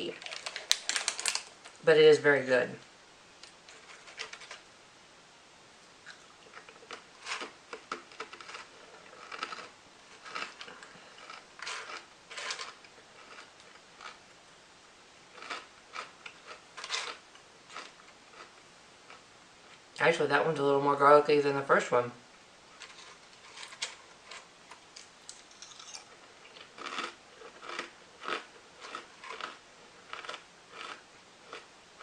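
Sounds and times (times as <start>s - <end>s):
crunchy snack chewing: 0.1s - 1.5s, 6.0s - 14.3s, 15.3s - 19.2s, 22.8s - 31.7s.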